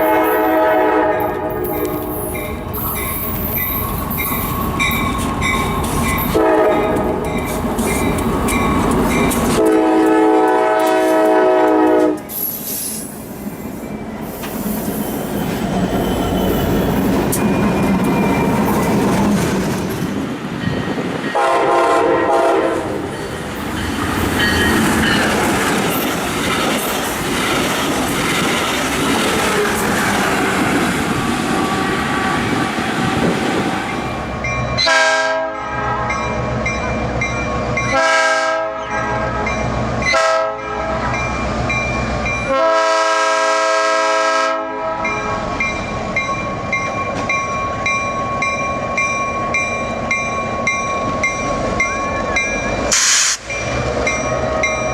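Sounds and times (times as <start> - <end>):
locomotive air horn blasts: 0.0 - 2.2, 6.3 - 7.2, 9.6 - 12.3, 21.4 - 23.0, 34.8 - 36.2, 37.9 - 39.5, 40.1 - 41.1, 42.5 - 45.2
train wheels clattering: 1.4 - 13.1, 23.0 - 34.1.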